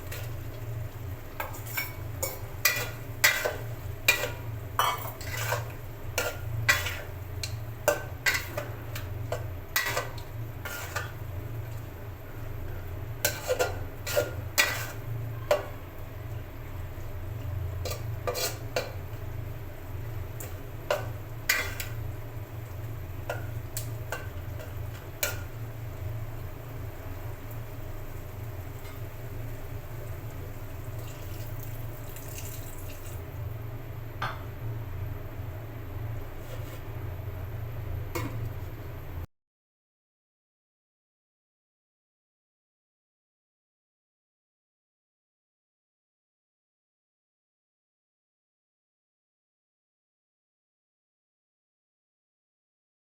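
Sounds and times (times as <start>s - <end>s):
spoon scraping a pot: 1.4s - 11.2s, 13.2s - 15.8s, 17.8s - 19.0s, 20.4s - 22.0s, 23.3s - 25.5s, 36.3s - 37.0s.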